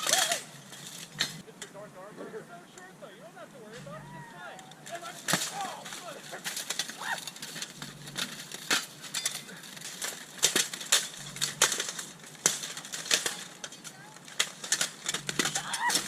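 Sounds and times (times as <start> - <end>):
weapons clanking on armor: 0.0 - 1.4, 4.8 - 16.0
faint voices: 1.2 - 8.4, 12.7 - 16.0.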